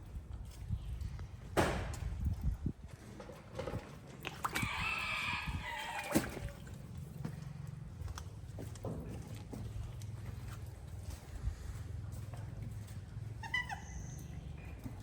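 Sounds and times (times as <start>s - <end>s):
rooster crowing: 4.6s - 6.2s.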